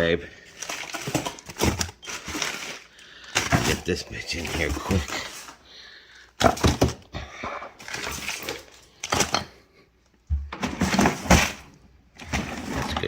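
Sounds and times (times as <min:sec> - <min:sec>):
bag of ice knocking and thudding: 0:00.5 - 0:05.6, 0:06.4 - 0:07.0, 0:07.8 - 0:09.5, 0:10.6 - 0:13.0.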